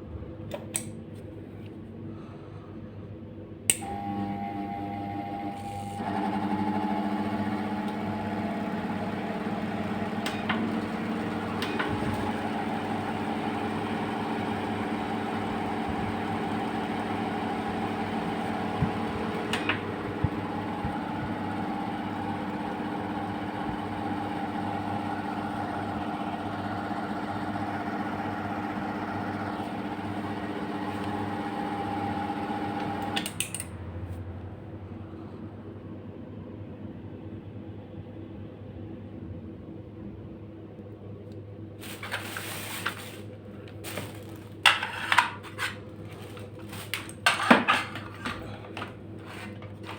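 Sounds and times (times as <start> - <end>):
ceiling fan motor humming: 0.0 - 36.3.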